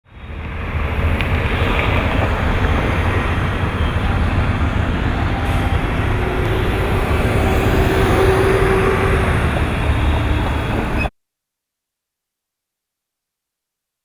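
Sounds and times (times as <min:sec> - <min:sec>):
city road traffic: 0:00.0 - 0:11.1.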